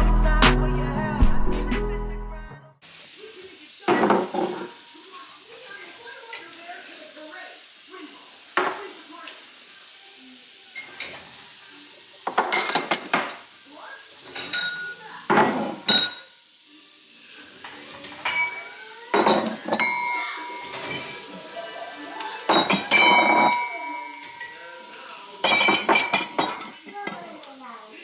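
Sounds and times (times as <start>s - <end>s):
dishes and cutlery clattering: 3.9s - 4.9s, 8.6s - 8.9s, 10.7s - 11.5s, 12.2s - 13.5s, 14.2s - 16.4s, 17.6s - 27.5s.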